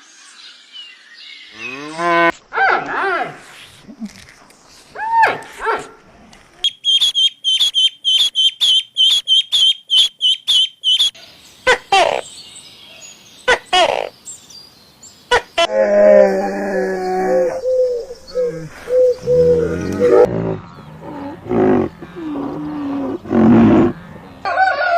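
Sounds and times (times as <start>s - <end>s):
bird chirping rapidly: 6.6s - 12.4s
wavering animal call: 15.6s - 24.5s.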